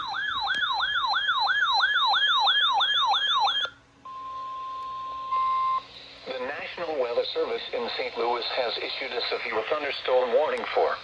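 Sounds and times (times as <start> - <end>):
electronic yelping siren: 0.0 - 3.8.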